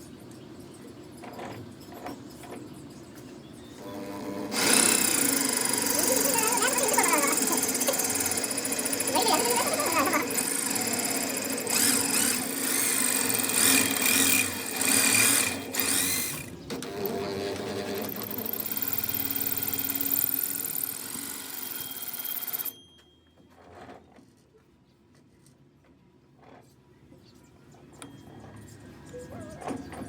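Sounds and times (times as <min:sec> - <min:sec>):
metalworking machinery whirring: 0:03.8 - 0:22.7.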